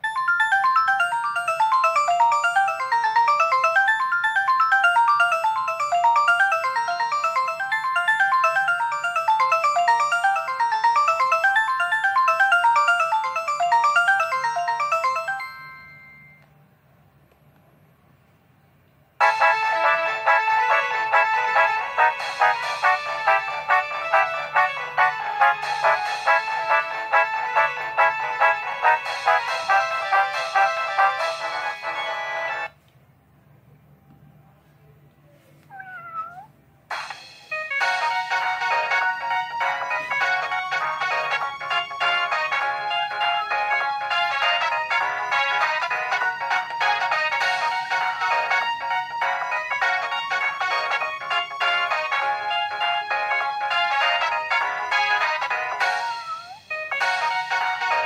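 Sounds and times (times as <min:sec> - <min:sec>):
phone ringtone melody: 0:00.0 - 0:16.5, 0:19.2 - 0:32.7, 0:37.7 - 0:58.0
cat meowing: 0:35.6 - 0:36.6, 0:56.0 - 0:56.7.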